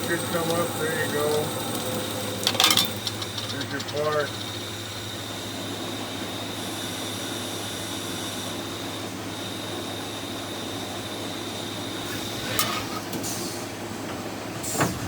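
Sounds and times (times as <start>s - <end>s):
lathe machine hum with whine: 0.0s - 14.8s
sharp machine clacks: 2.4s - 4.5s.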